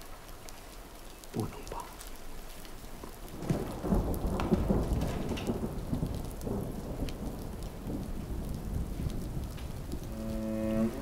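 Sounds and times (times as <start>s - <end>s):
drips and patters: 0.0s - 11.0s
heavy rain: 0.0s - 11.0s
thunder rumble: 3.2s - 11.0s.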